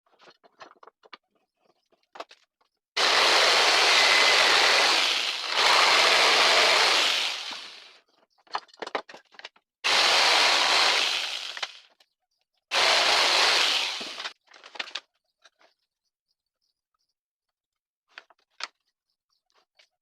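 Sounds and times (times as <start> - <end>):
wood clicks and knocks: 0.2 - 2.8, 8.1 - 9.7.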